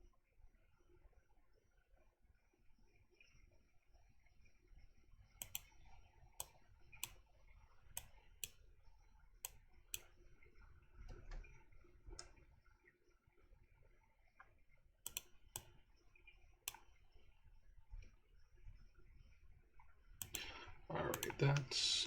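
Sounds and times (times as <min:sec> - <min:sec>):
computer mouse and keyboard clicks: 0:05.4 - 0:07.3, 0:07.9 - 0:08.6, 0:09.4 - 0:10.2, 0:15.0 - 0:15.8, 0:20.2 - 0:21.6
faint room hiss: 0:15.1 - 0:22.0.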